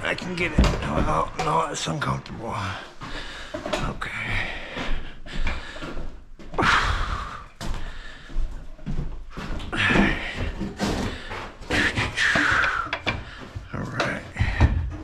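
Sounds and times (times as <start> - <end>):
wood knocking and thudding: 0.0 - 1.5, 9.5 - 15.0
wood scraping: 8.9 - 15.0.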